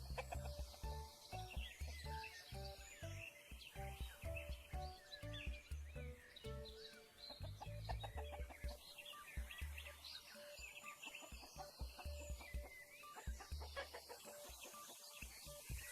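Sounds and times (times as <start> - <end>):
chickens clucking: 0.0 - 3.2, 6.5 - 15.9
music with low beat: 0.0 - 15.9.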